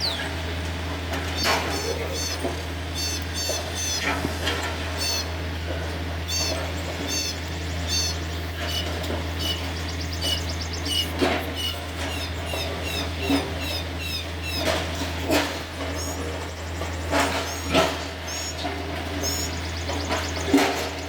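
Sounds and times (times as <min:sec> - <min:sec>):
bird trill: 0:00.0 - 0:00.3, 0:01.4 - 0:04.0, 0:06.3 - 0:14.7, 0:19.2 - 0:20.5
birds chirping and squawking: 0:00.0 - 0:00.5, 0:01.1 - 0:05.5, 0:06.1 - 0:21.0.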